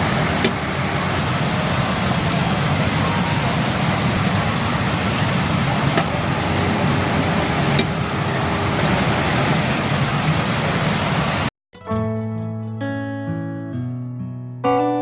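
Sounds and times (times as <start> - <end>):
pachinko machines running: 0.0 - 11.4.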